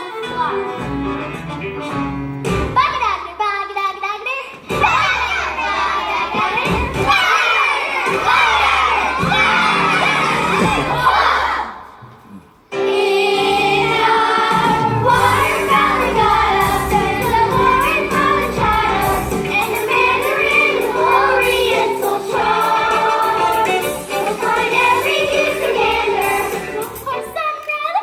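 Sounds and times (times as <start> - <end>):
instrumental accompaniment: 12.7 - 27.3.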